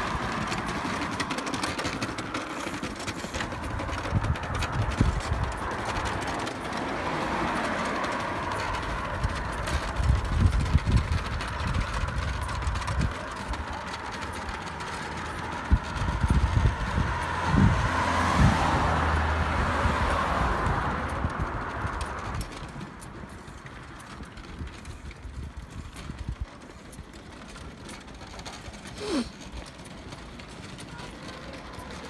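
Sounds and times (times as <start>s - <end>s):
bicycle tyres on forest track: 0.0s - 32.0s
wind buffeting microphone: 3.2s - 14.2s, 15.4s - 23.0s.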